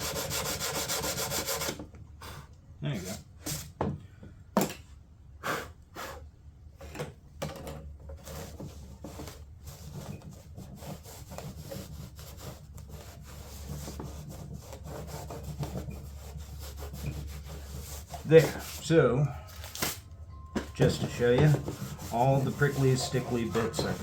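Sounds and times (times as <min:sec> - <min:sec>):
hand sanding fiberglass: 0:00.0 - 0:01.8, 0:08.3 - 0:19.0, 0:20.8 - 0:24.0
scratchy strokes and knocks: 0:08.1 - 0:18.9, 0:20.6 - 0:24.0.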